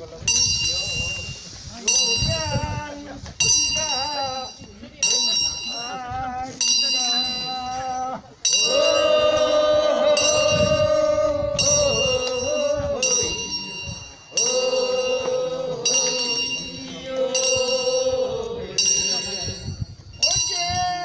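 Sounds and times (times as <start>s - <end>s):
hand bell ringing: 0.3s - 2.6s, 3.4s - 9.4s, 10.2s - 11.0s, 11.6s - 21.0s
person singing long drawn-out notes: 7.7s - 13.5s, 14.3s - 19.7s.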